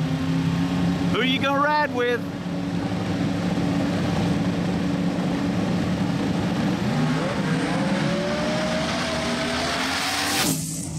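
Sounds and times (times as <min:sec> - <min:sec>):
race car engines idling: 0:00.0 - 0:07.1
car engine revving up accelerating: 0:02.8 - 0:10.9.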